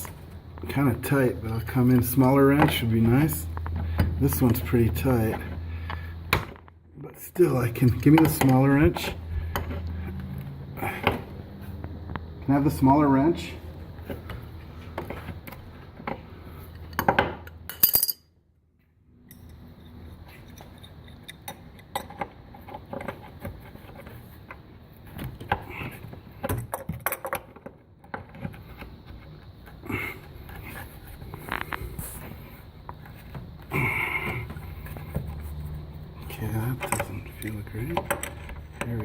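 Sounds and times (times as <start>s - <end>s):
wrench clinking on metal: 17.7s - 18.3s.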